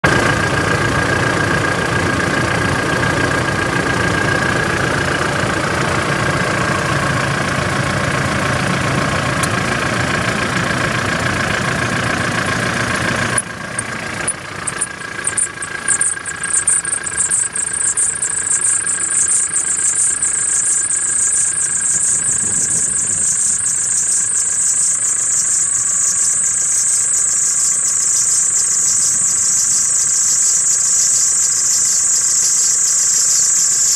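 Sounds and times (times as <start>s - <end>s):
diesel engine running: 0.0s - 33.9s
high-pitched whistle: 14.7s - 33.9s.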